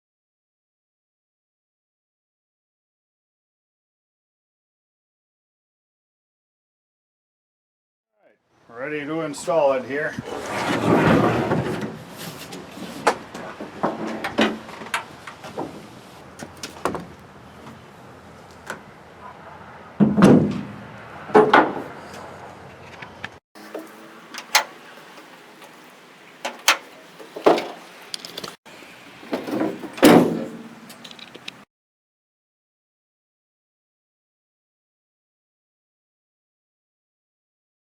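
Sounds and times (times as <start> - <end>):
metal clanks and knocks: 20.0 - 21.9, 26.4 - 28.6, 29.2 - 31.6
metal rattles: 29.2 - 31.6.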